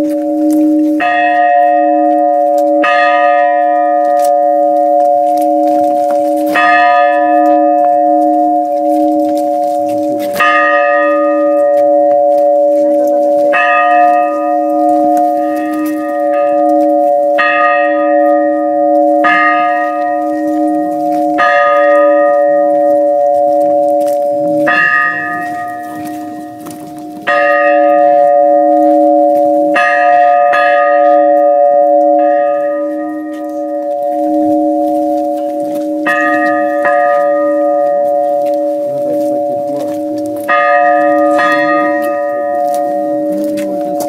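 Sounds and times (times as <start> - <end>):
church bell ringing: 0.0 - 44.0.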